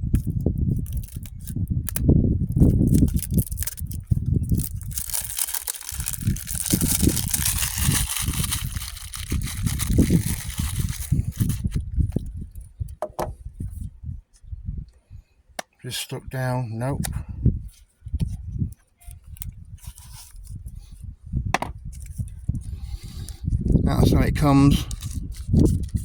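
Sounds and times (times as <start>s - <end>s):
gusty low rumble: 0.0s - 15.2s, 16.2s - 26.0s
package handling clicks and rubbing: 0.1s - 12.3s, 24.9s - 26.0s
scraping and crinkling: 0.8s - 2.0s, 2.6s - 11.8s.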